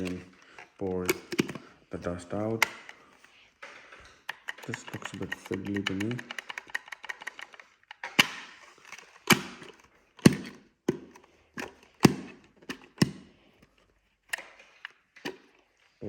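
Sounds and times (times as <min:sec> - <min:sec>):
plastic vacuum lid clicks: 0:01.0 - 0:01.7, 0:09.2 - 0:13.3.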